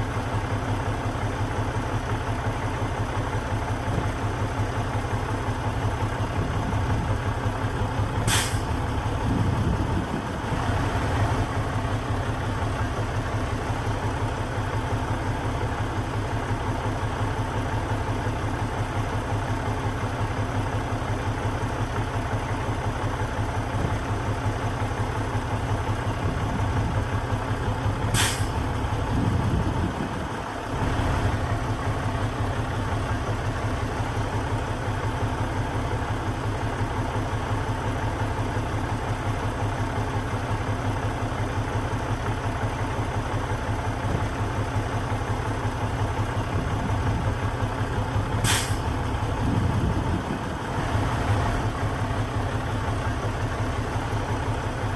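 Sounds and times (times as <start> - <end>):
heavy diesel engine running: 0.0 - 54.9
sharp air release hiss: 8.2 - 8.7, 28.1 - 28.6, 48.4 - 48.9.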